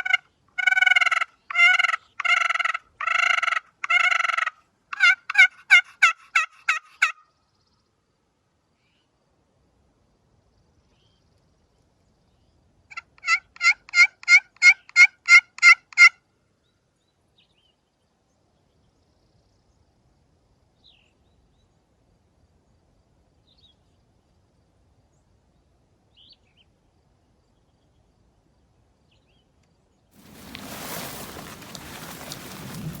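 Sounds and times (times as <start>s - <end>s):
turkey yelps: 0.0s - 7.2s.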